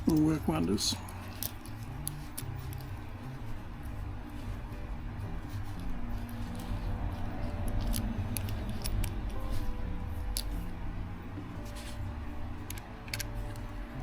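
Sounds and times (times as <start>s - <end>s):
small metallic clicks and taps: 0.0s - 3.0s, 5.5s - 10.7s, 12.6s - 13.7s.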